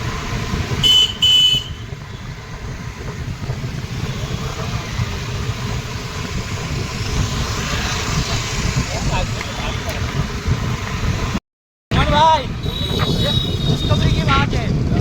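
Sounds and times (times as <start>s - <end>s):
motorbike engine rumble: 0.0s - 15.0s
road noise: 0.0s - 15.0s
vehicle horn beeping: 0.8s - 2.2s, 12.6s - 14.3s.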